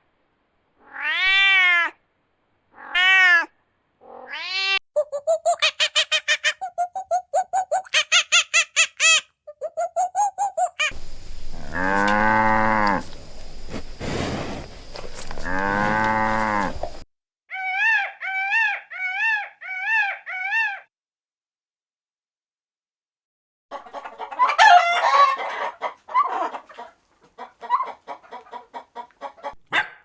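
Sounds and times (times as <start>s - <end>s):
short high-pitched animal calls: 4.2s - 13.3s
short animal calls: 9.0s - 17.0s
cow mooing: 11.0s - 13.6s, 15.2s - 17.0s.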